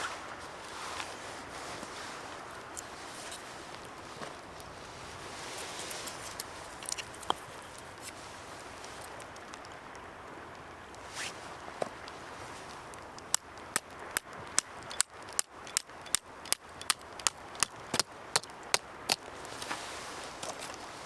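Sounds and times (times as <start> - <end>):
sharp evenly spaced clicks: 13.0 - 19.3.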